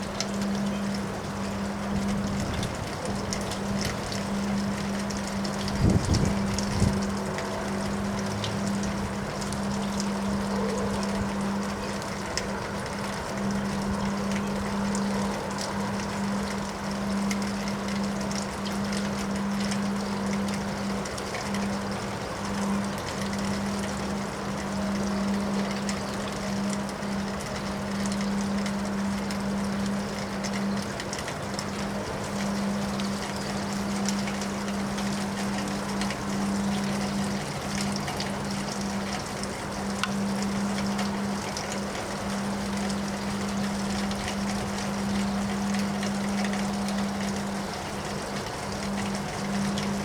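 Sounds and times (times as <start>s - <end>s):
constant low hum: 0.0s - 50.0s
wind: 0.0s - 50.0s
light ticks: 24.6s - 50.0s.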